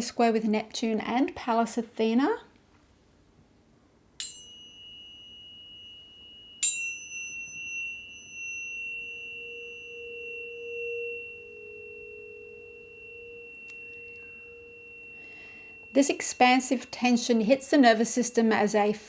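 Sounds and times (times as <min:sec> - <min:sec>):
high tuning fork ringing: 0:04.2 - 0:19.0
low wavering tuning fork tone: 0:04.2 - 0:19.0.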